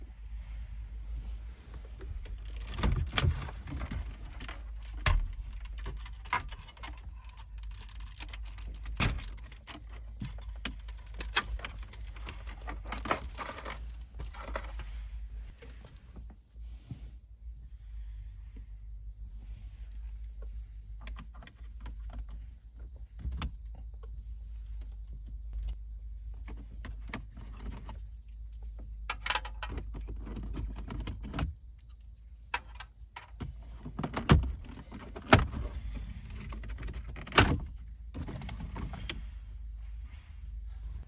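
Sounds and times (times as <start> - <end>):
steady low hum: 0.0 - 41.0
tools clicking on plastic parts: 2.2 - 14.9.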